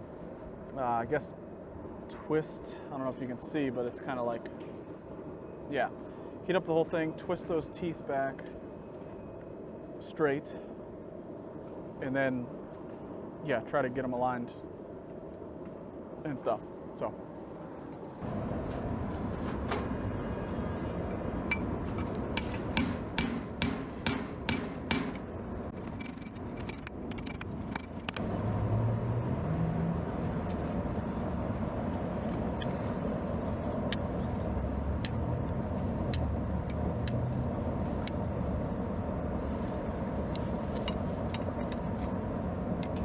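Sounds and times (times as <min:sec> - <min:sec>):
hammer striking metal: 0:22.4 - 0:25.2
steady roar: 0:28.2 - 0:31.8.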